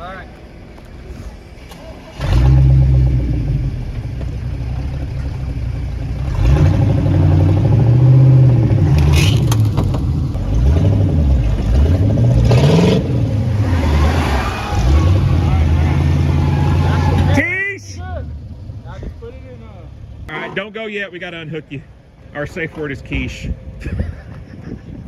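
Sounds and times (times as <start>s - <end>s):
car engine revving: 1.7s - 20.4s.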